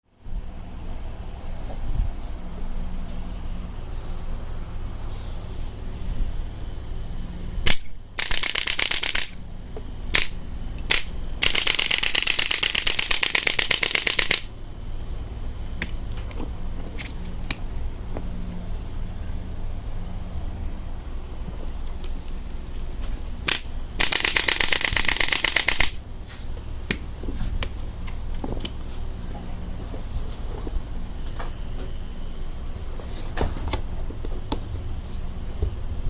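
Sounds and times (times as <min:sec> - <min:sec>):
steady low hum: 0:00.0 - 0:36.0
adjusting gun clicking: 0:10.2 - 0:14.5, 0:23.5 - 0:26.0.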